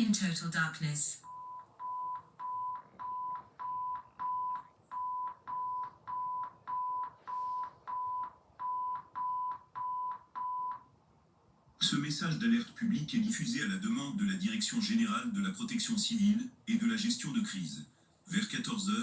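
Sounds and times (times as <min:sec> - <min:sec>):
high steady alert beeps: 0:01.2 - 0:10.8.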